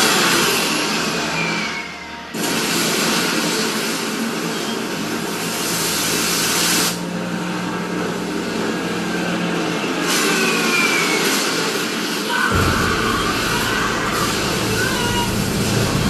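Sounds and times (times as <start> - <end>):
loud rushing hiss: 0.0 - 7.6, 9.5 - 16.0
engine drone: 4.4 - 11.8, 12.5 - 16.0.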